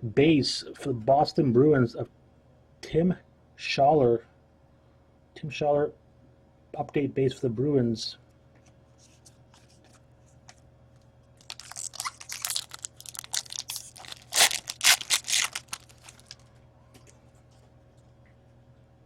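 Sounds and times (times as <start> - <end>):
card packaging crinkling: 11.4 - 16.5.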